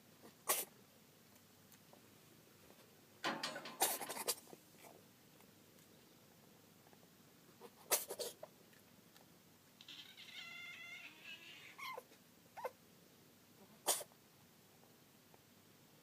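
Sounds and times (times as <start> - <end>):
cat sneezing: 0.4 - 0.8, 3.8 - 4.4, 7.6 - 8.4, 13.8 - 14.1
cat mewing: 9.8 - 12.8.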